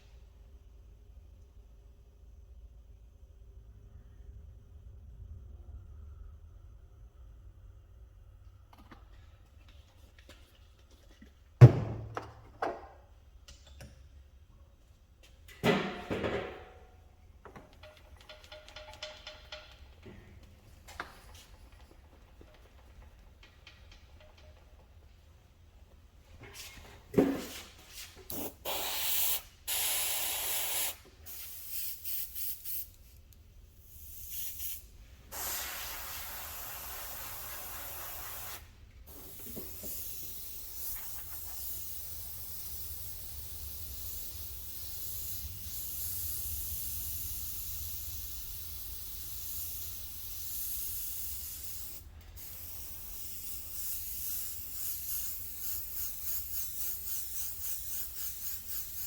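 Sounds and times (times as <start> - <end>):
paint sprayer hissing: 27.2 - 33.1, 33.9 - 59.0.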